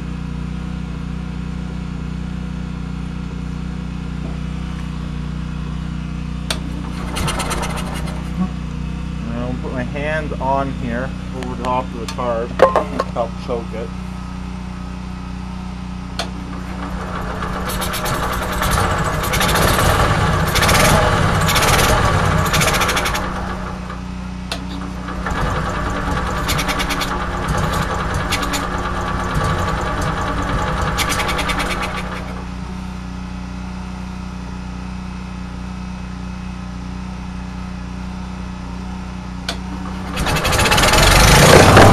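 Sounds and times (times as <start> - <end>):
loud engine noise: 1.3 - 34.4, 38.2 - 41.9
generator electric starter cranking: 6.5 - 8.8, 16.1 - 33.0, 39.5 - 41.9.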